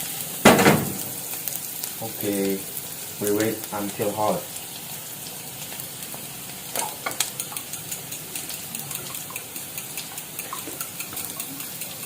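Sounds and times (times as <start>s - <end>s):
fat sizzling in a frying pan: 0.0s - 12.0s
sharp crackles and pops: 0.0s - 12.0s.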